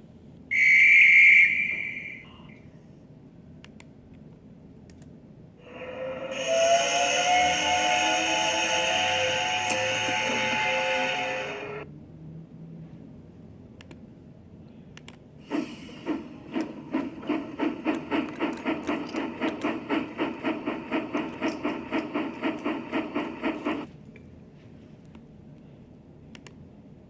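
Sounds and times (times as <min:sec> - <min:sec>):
rapid rubbing strokes: 0:15.5 - 0:23.9.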